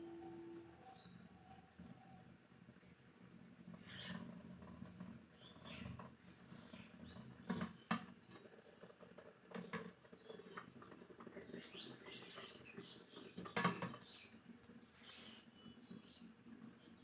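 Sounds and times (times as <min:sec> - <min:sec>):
faint high chirping: 0:00.0 - 0:02.3.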